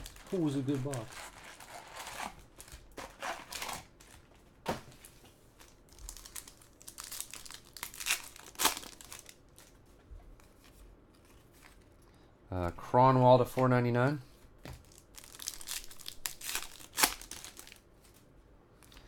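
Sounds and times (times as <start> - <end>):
plastic packaging tearing and crinkling: 0.0 - 4.2, 5.6 - 9.8, 14.8 - 17.8.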